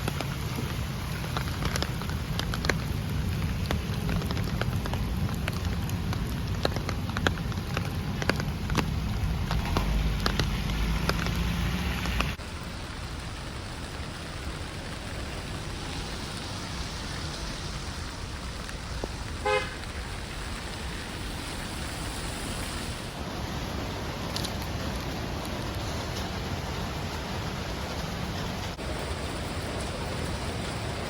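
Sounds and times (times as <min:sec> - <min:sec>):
heavy rain falling: 0:00.0 - 0:31.0
rain drop clicks: 0:00.0 - 0:31.0
car horn toot: 0:19.4 - 0:19.8.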